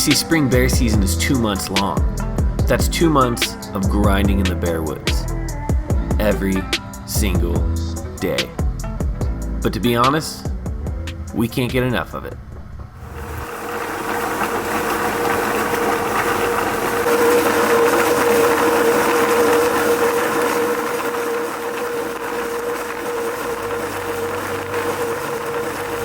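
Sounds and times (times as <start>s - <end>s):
machine humming and whirring: 12.3s - 26.0s.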